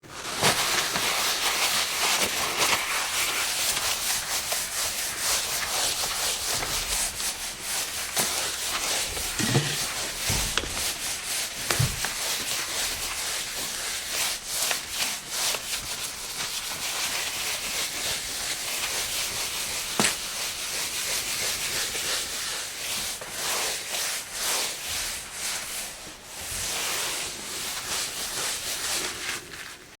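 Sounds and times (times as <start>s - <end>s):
cloth rubbing on countertop: 0.1s - 30.0s.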